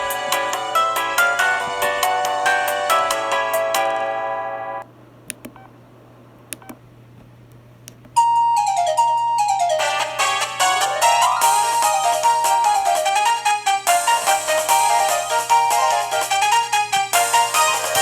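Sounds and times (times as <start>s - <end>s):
phone ringtone melody: 0.2s - 4.4s, 8.2s - 11.8s
clicks: 5.2s - 5.7s, 6.4s - 8.2s.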